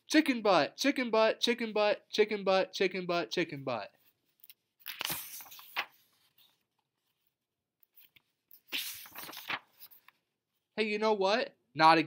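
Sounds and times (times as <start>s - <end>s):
paper pages turning: 4.0s - 10.2s.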